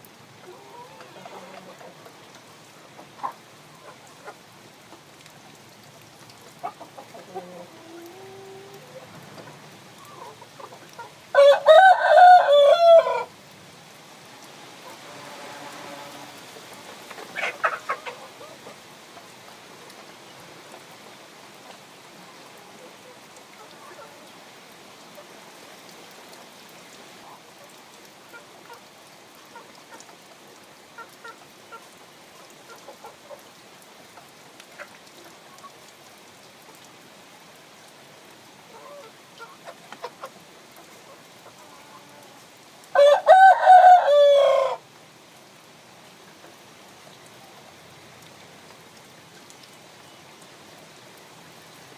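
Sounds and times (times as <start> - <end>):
chicken clucks: 0.4 - 2.2, 6.6 - 11.2, 14.8 - 18.8, 38.7 - 40.4
rooster crowing: 11.3 - 13.3, 42.9 - 44.8.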